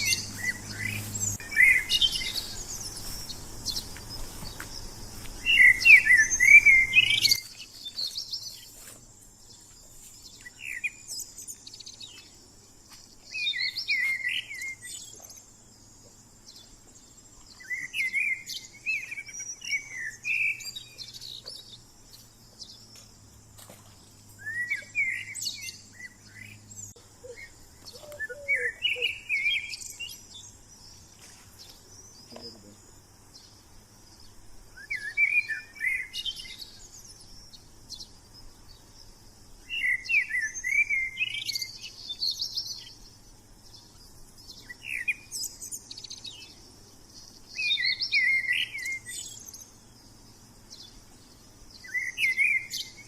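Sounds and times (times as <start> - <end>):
birds warbling: 0.0 - 8.8, 23.7 - 32.9.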